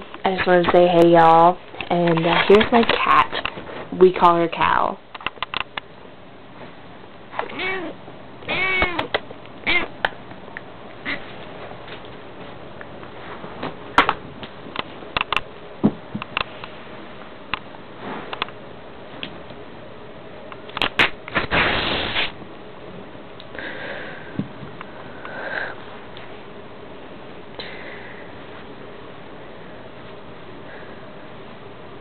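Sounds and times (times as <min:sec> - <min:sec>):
noisy puff: 0:21.0 - 0:22.4
sniffing close to microphone: 0:21.4 - 0:22.4.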